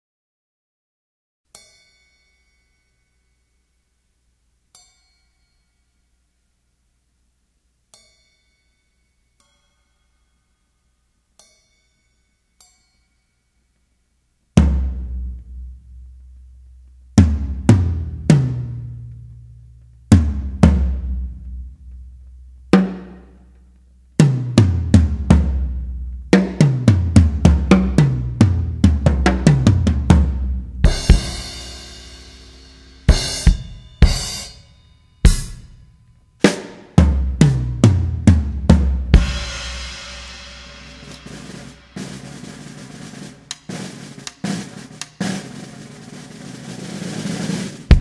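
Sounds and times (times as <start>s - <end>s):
drum kit solo: 14.6s - 48.0s
cymbal crashes: 30.8s - 37.0s, 39.1s - 45.8s.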